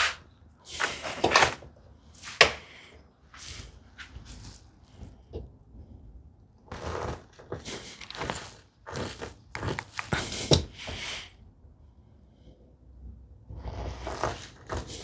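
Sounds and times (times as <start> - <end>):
hand tools scraping wood: 0.0 - 1.6, 2.3 - 4.2.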